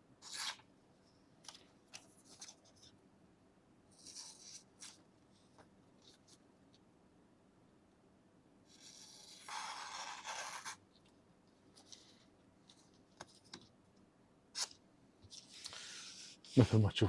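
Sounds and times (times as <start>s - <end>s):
knife slicing paper: 0.2s - 0.6s, 8.8s - 10.8s.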